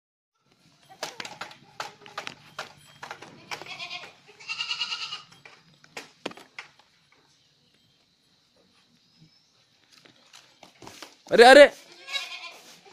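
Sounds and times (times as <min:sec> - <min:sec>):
goats bleating: 0:03.4 - 0:05.3, 0:11.8 - 0:12.9.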